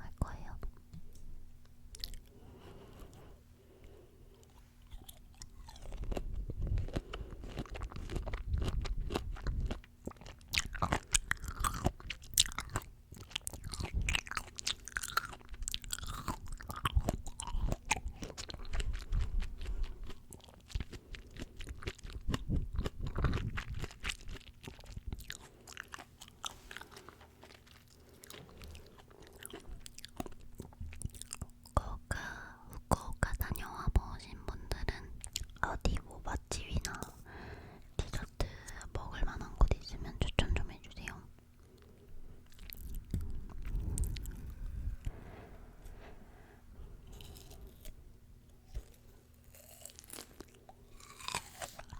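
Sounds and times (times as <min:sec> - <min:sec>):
chewing crunchy fruit: 0:01.9 - 0:03.3, 0:04.2 - 0:45.2, 0:46.8 - 0:51.9.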